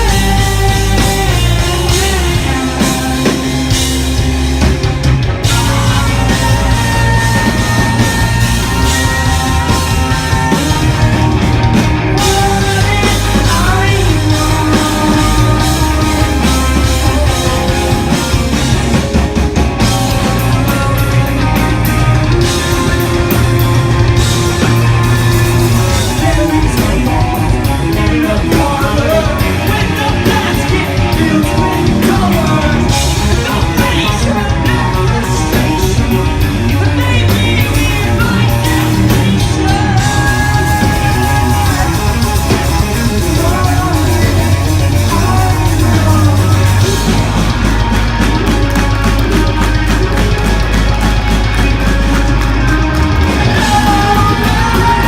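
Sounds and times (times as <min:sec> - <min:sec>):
live rock band playing: 0:00.0 - 0:55.0
person singing and yelling: 0:05.4 - 0:18.6, 0:24.5 - 0:50.8, 0:52.6 - 0:55.0.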